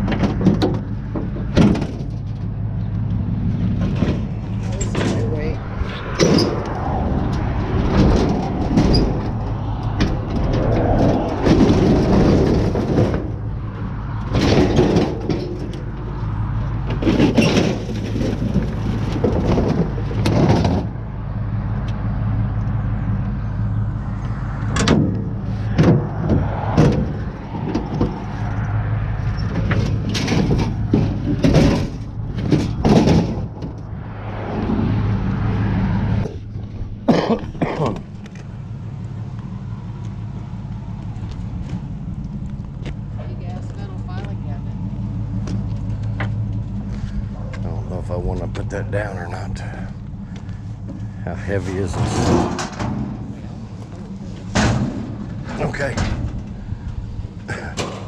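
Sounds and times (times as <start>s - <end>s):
vehicle engine running: 0.0s - 58.0s
scrap metal clanking: 3.7s - 16.0s, 16.8s - 21.0s, 29.2s - 33.8s, 49.6s - 58.0s.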